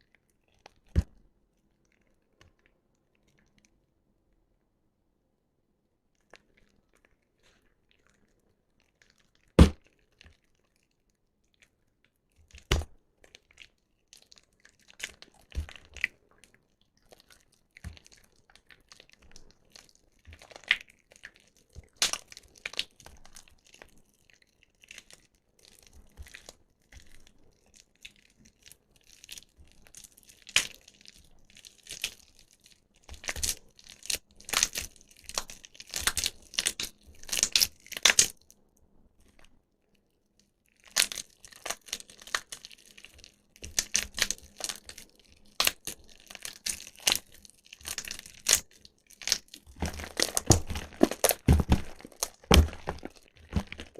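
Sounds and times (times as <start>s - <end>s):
wet soap crackling: 6.2s - 11.7s, 12.4s - 38.4s, 40.7s - 53.9s.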